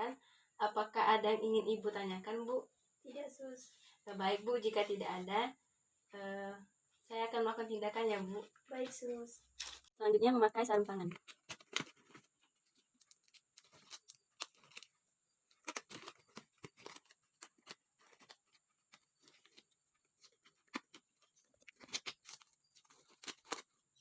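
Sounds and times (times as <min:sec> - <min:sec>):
medical gloves crackling and rustling: 0:08.1 - 0:10.0, 0:10.6 - 0:24.0.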